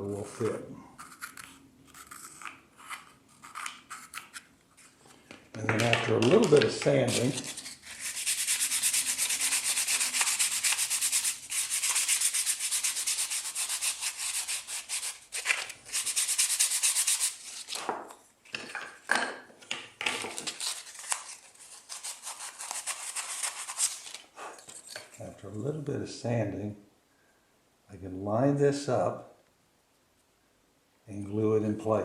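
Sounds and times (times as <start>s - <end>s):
sandpaper sanding wood: 7.0s - 17.7s, 21.7s - 24.1s.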